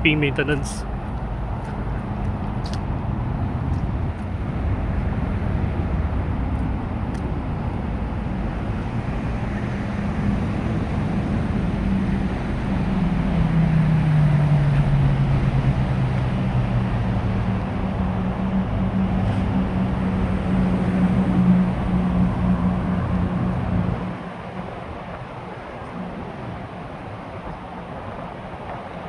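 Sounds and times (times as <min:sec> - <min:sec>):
outdoor traffic noise: 0:00.0 - 0:29.0
vehicle engine passing: 0:08.3 - 0:25.0.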